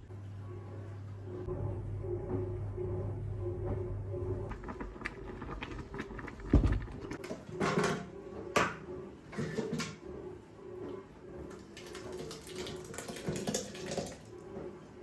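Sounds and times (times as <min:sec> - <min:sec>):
low thump: 0:06.4 - 0:07.2.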